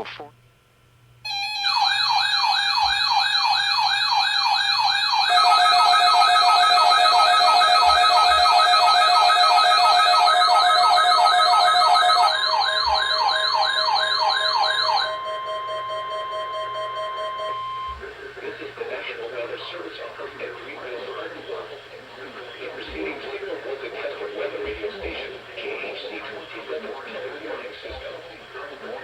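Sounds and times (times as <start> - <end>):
warbling siren-like tones: 1.6 - 18.0.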